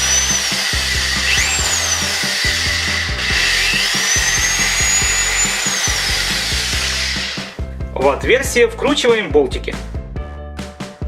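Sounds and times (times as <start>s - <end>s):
electric drill whining: 0.0s - 7.6s
background music: 0.0s - 11.0s.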